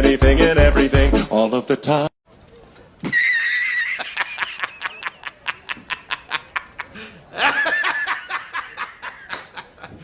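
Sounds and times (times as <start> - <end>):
high-pitched laugh: 3.0 - 10.0.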